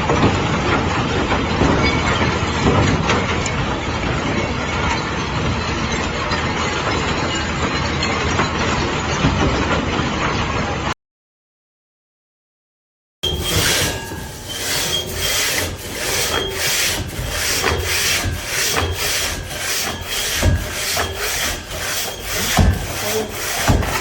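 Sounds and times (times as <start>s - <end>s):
hand tool rasping strokes: 13.2s - 24.0s.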